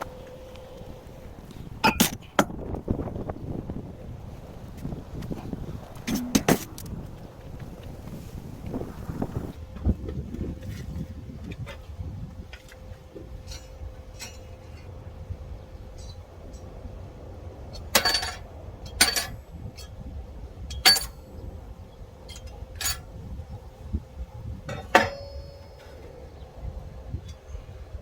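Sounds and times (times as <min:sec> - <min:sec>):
low steady hum: 0:00.0 - 0:28.0
metal parts clanging: 0:06.0 - 0:06.9.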